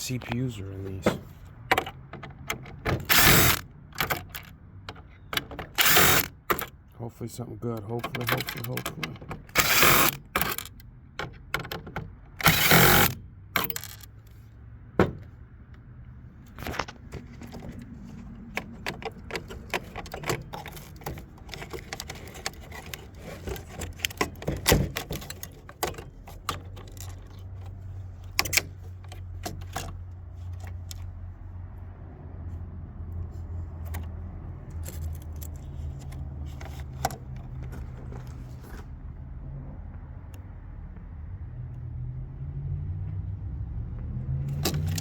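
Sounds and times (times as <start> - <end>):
tools and metal parts clicking: 1.0 - 6.7, 7.7 - 14.2, 17.1 - 31.1, 34.7 - 38.4, 44.6 - 45.0.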